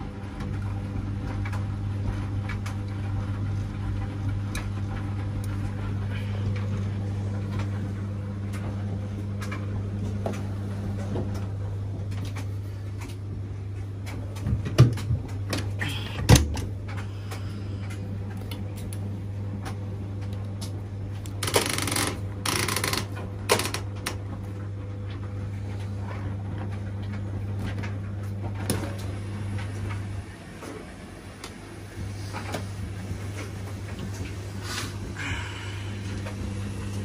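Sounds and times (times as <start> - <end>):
washing machine hum: 0.0 - 37.0
washing machine knocks: 14.5 - 16.7.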